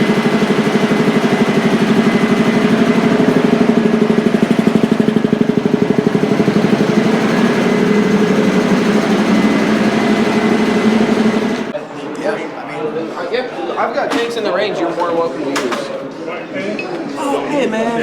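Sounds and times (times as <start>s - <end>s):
small engine idling: 0.0s - 11.7s.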